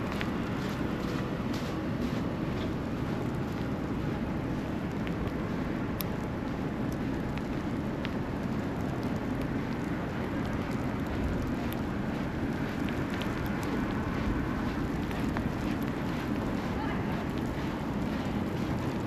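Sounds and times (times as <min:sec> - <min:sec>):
low rumble of traffic: 0:00.0 - 0:19.0
faint ticks: 0:06.0 - 0:14.0.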